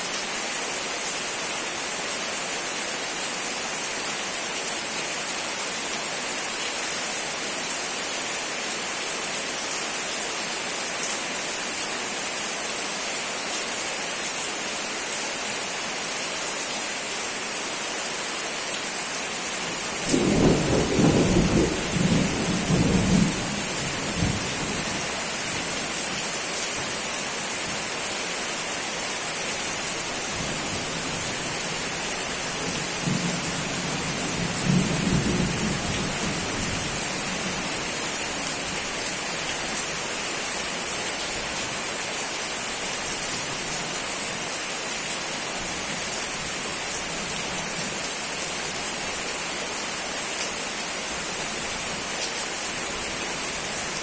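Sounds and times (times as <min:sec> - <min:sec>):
steady rain falling: 0:00.0 - 0:54.0
thunder rumbling: 0:20.1 - 0:24.4.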